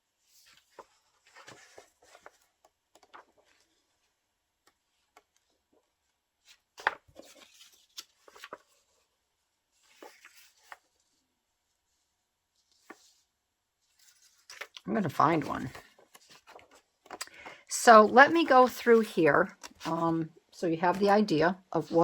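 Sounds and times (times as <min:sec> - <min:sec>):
magazine paper rustling: 0:00.2 - 0:03.9, 0:06.4 - 0:09.1, 0:09.8 - 0:11.1, 0:12.6 - 0:13.2, 0:13.9 - 0:20.2.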